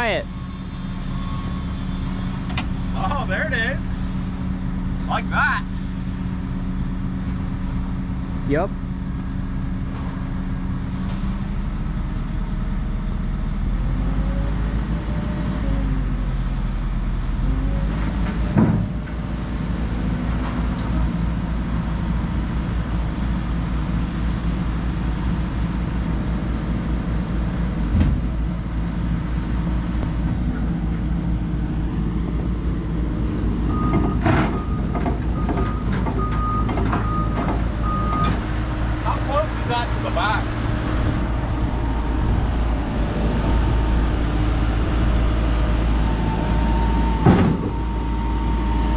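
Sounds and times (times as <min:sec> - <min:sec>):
excavator diesel engine running: 0:00.0 - 0:48.9
travel alarm beeping: 0:45.9 - 0:48.9.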